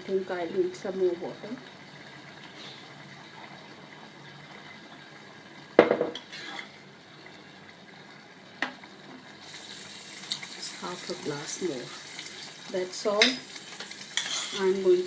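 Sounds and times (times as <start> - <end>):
metal kitchenware clanking on pot: 14.2 - 14.6.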